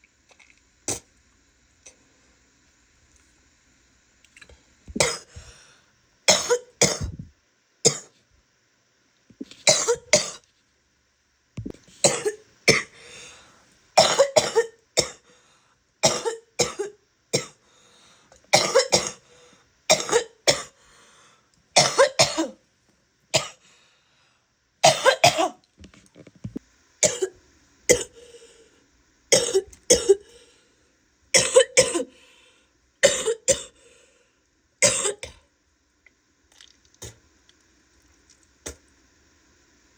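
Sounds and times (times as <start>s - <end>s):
woman coughing wet coughs: 5.0s - 5.3s, 6.3s - 7.3s, 9.7s - 10.4s, 12.0s - 12.9s, 14.0s - 15.2s, 16.0s - 17.6s, 18.5s - 19.2s, 19.9s - 20.8s, 21.8s - 22.6s, 24.8s - 25.6s, 27.0s - 27.3s, 27.9s - 28.2s, 29.3s - 30.3s, 31.4s - 32.1s, 33.0s - 33.8s, 34.8s - 35.4s.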